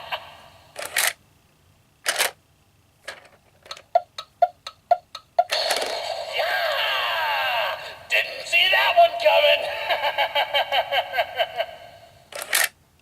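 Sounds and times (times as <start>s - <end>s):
clock-like ticking: 3.7s - 5.6s
loud sustained sound: 5.5s - 10.0s.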